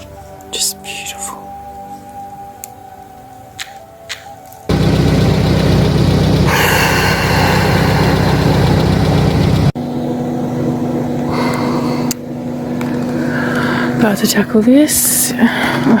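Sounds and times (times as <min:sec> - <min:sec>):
vehicle engine running: 0:04.7 - 0:11.8.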